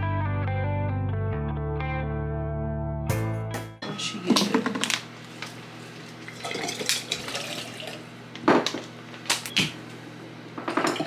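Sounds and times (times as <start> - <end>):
dishes and utensils clattering: 3.8 - 7.7, 10.6 - 11.0.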